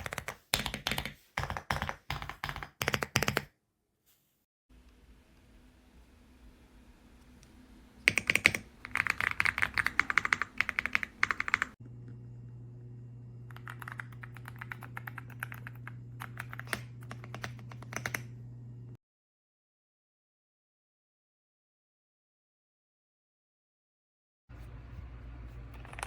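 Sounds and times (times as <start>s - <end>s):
mechanical keyboard typing: 0.0s - 3.5s, 8.1s - 11.8s, 13.5s - 18.3s
steady low hum: 8.7s - 19.0s, 24.5s - 26.0s.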